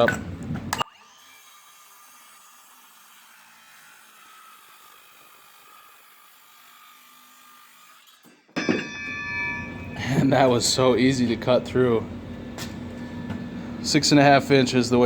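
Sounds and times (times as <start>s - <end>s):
circular saw cutting wood: 0.8s - 15.0s.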